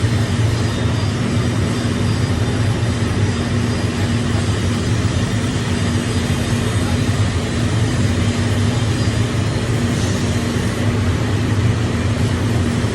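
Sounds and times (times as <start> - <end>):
arc welding hum and hiss: 0.0 - 12.9.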